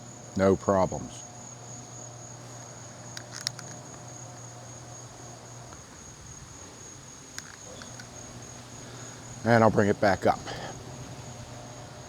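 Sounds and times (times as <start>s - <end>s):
garage door motor humming: 0.0s - 12.0s
high insect trill: 0.0s - 12.0s
light clicks: 2.5s - 4.5s, 7.3s - 9.4s.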